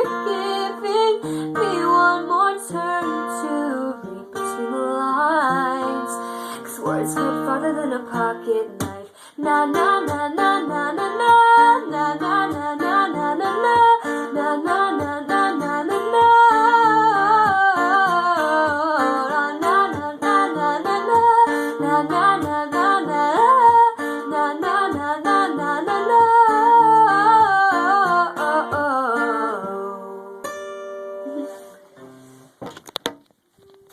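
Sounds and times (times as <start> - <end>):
woman singing wordless melody: 0.0 - 30.5
acoustic guitar strumming: 0.0 - 33.9.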